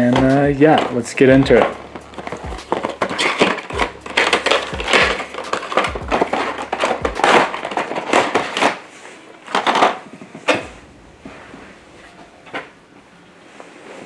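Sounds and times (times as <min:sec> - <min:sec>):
dull low thumps: 0:00.0 - 0:08.0, 0:10.6 - 0:12.6.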